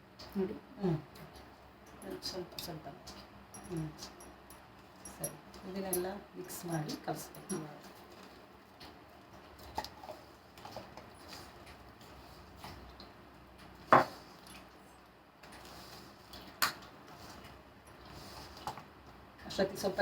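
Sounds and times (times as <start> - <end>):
batter being mixed in a bowl: 4.0 - 20.0.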